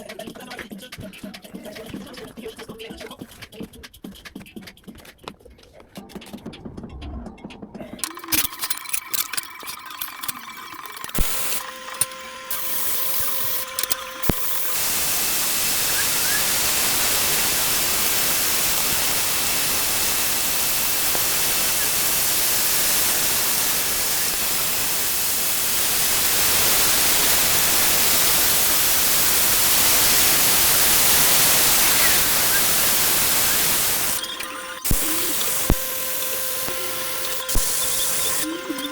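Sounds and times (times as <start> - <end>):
short clicks and ticks: 8.0 - 38.9
welding arc hiss: 8.0 - 38.9.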